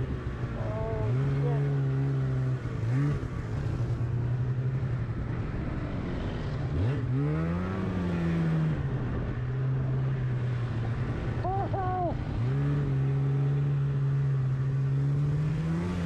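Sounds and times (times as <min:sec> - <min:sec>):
snowmobile engine revving: 0:00.0 - 0:03.8, 0:06.7 - 0:08.8.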